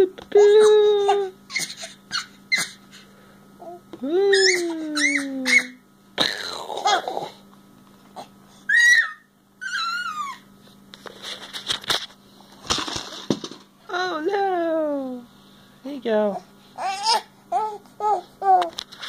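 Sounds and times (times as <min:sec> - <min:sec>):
baby babbling and squealing: 0:04.3 - 0:07.2, 0:08.7 - 0:10.4, 0:16.8 - 0:18.6.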